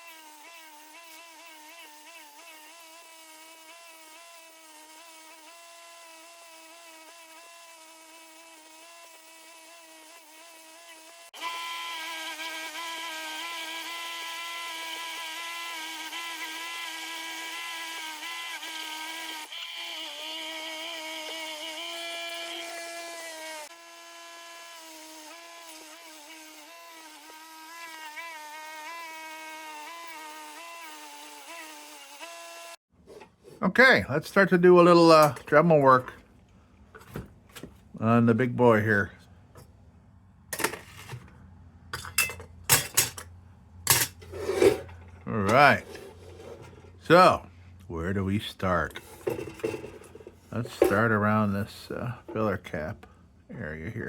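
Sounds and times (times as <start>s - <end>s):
small electric motor humming: 0.0s - 32.8s.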